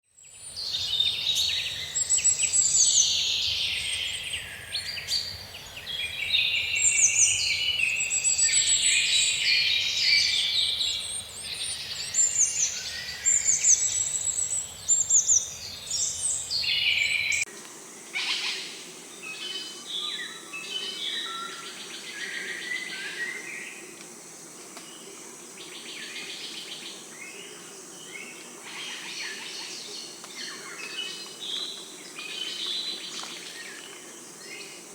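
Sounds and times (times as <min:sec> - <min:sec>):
chorus of birds chirping: 0:00.5 - 0:17.5.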